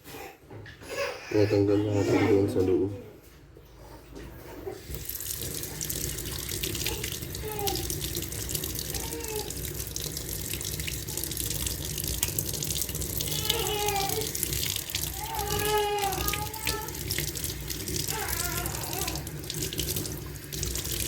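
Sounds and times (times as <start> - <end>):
tap water running: 4.8 - 21.0.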